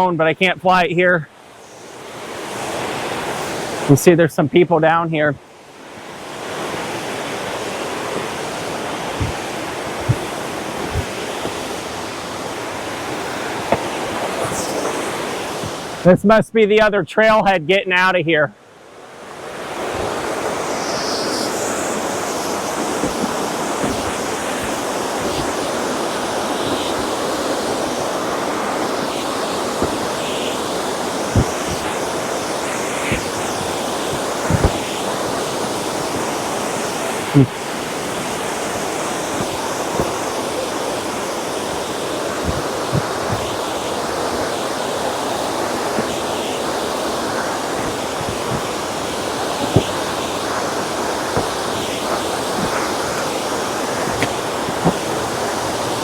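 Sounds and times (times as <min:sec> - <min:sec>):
waterfall and creek rushing: 0:00.0 - 0:16.2, 0:17.8 - 0:56.0
soft low thumps: 0:09.1 - 0:11.7, 0:33.0 - 0:35.1, 0:47.4 - 0:55.6.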